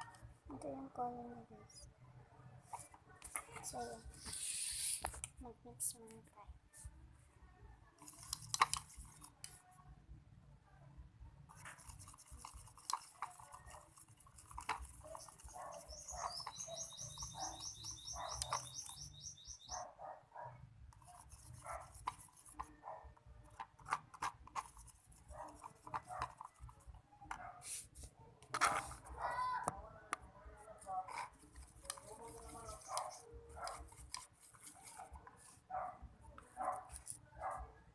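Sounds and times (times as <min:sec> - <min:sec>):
slime being stirred and scraped: 0:11.6 - 0:19.0, 0:23.7 - 0:26.9, 0:30.7 - 0:35.6.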